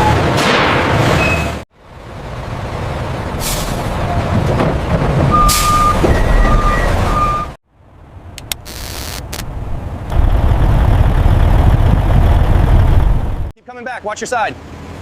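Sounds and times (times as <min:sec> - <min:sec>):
reversing alarm beeping: 0:05.3 - 0:07.6
truck engine running: 0:10.1 - 0:13.5.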